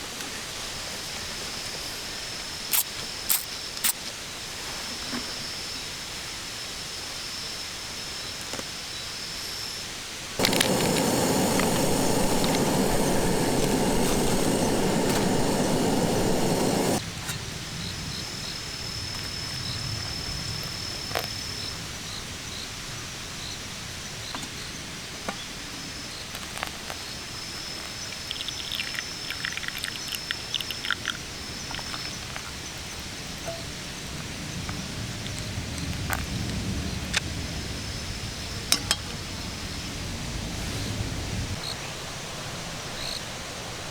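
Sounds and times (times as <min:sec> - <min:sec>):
steady hiss: 0:10.4 - 0:17.0, 0:26.1 - 0:36.7
bird chirps: 0:27.8 - 0:30.7.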